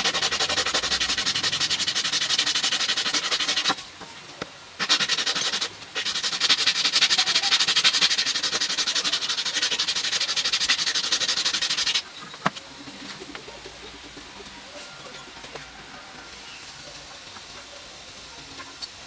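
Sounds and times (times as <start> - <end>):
sanding steel knife: 0.0 - 3.8, 4.8 - 12.1.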